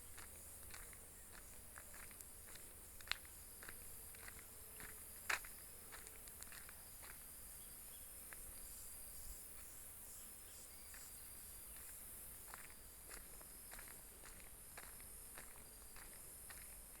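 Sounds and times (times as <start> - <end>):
footsteps on road: 0.0 - 7.4, 10.9 - 17.0
insects chirring: 0.0 - 17.0.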